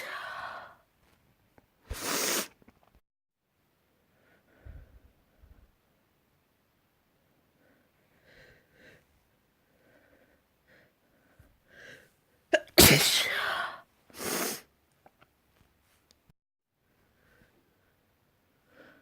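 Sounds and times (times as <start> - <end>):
person sneezing: 12.5 - 14.7.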